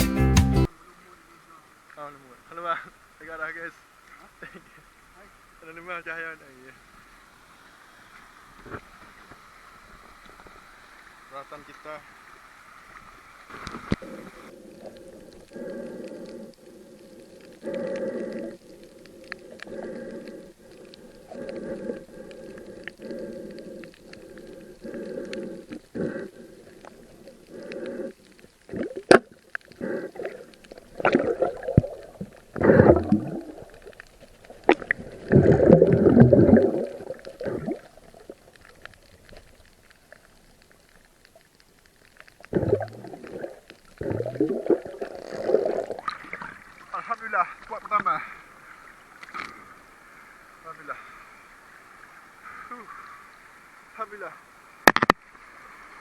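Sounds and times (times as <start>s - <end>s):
water gurgling: 0.7s - 56.0s
water splashing and bubbling: 12.1s - 53.8s, 54.7s - 56.0s
breathing through snorkel tube: 13.5s - 38.4s, 42.5s - 46.6s.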